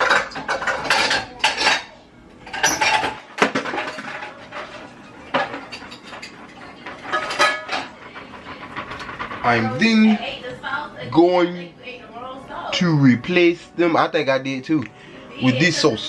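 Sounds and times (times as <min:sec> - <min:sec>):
utensils clattering against dishes: 0:00.0 - 0:10.7.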